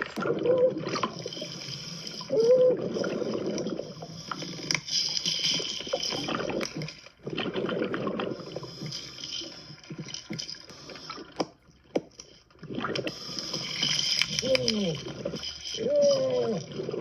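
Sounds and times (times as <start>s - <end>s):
scuba regulator bubbling underwater: 0.0s - 4.8s, 5.9s - 8.9s, 12.6s - 17.0s.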